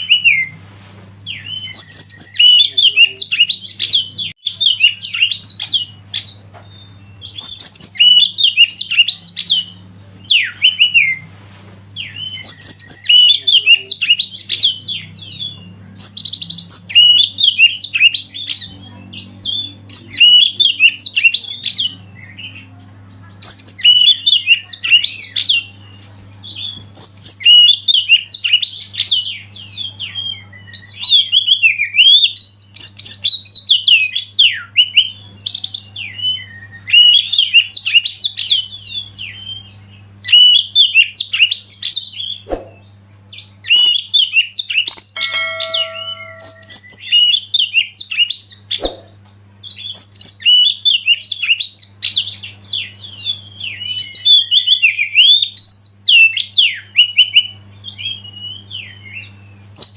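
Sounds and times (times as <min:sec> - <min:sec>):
songbird singing: 0:00.0 - 0:59.9
steady low hum: 0:42.1 - 0:43.7
whistle-like call: 0:45.2 - 0:46.8.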